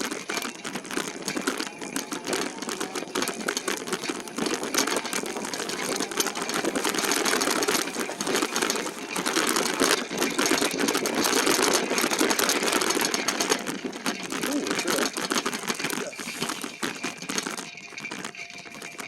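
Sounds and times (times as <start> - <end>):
bike rattling over rough trail: 0.0 - 19.0.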